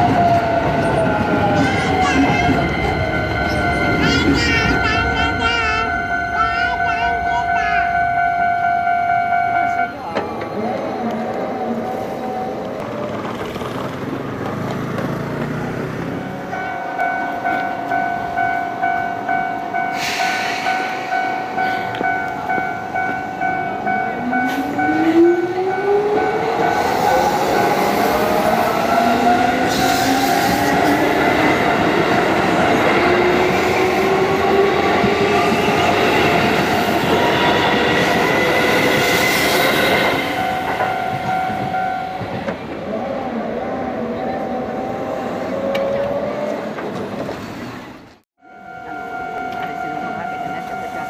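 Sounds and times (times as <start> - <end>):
train wheels rumbling on rail: 0.0 - 7.4, 9.6 - 48.2
level-crossing alarm clanging: 0.0 - 13.8, 16.1 - 42.9, 48.4 - 51.0.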